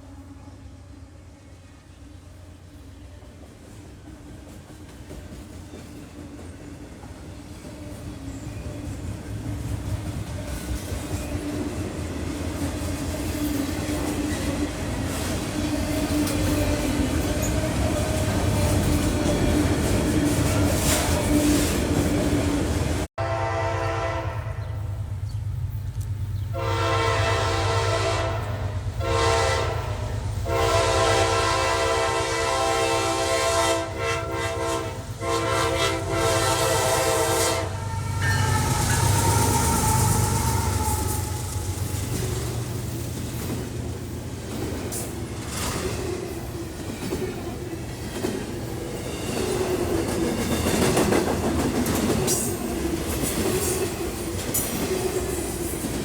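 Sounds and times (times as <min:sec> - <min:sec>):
diesel train engine rumbling: 0:00.0 - 0:56.0
locomotive horn blasts: 0:23.2 - 0:25.0, 0:26.5 - 0:42.0.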